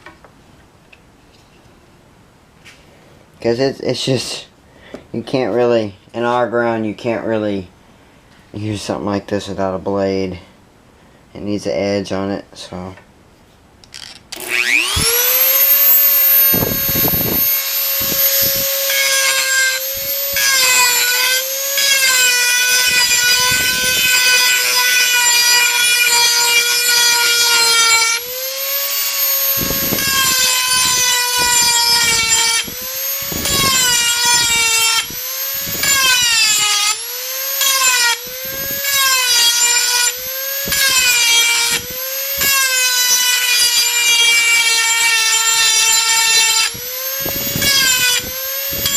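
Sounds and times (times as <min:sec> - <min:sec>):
rotary tool grinding steel: 0:13.9 - 0:48.9.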